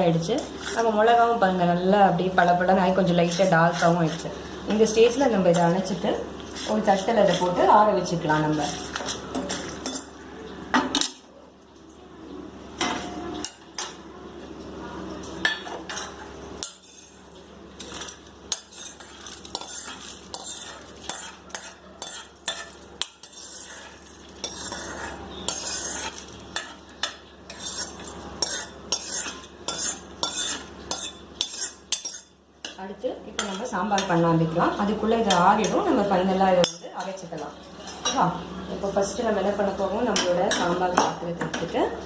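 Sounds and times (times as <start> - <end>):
metal spoon scraping a pan: 0.3 - 1.2, 2.3 - 10.2, 15.4 - 38.3.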